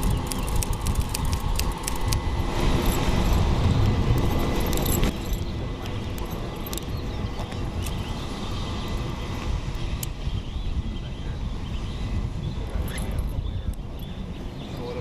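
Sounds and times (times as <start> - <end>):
metallic clicks of gear handled: 0.0 - 7.0.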